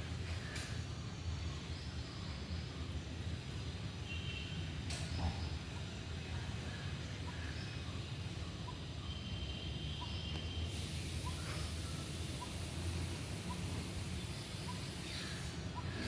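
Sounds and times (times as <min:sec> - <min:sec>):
low outdoor background rumble: 0:00.0 - 0:16.0
faint bird peeps: 0:07.2 - 0:09.3, 0:09.9 - 0:16.0.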